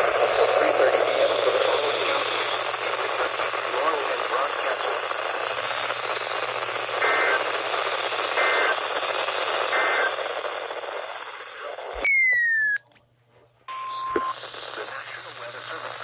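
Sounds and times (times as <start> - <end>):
radio static hiss: 0.0 - 12.8, 13.9 - 16.0
two-tone data chirps: 12.0 - 12.9.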